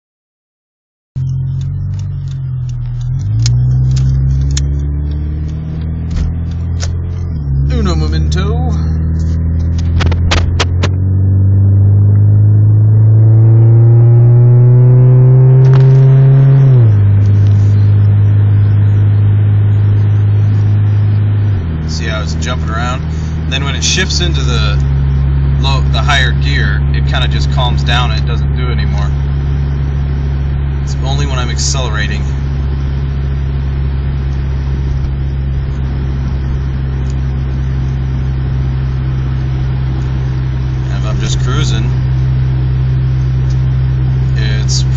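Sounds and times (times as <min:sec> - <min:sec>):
sharp clicks: 0:01.2 - 0:07.0
car engine accelerating: 0:01.2 - 0:44.9.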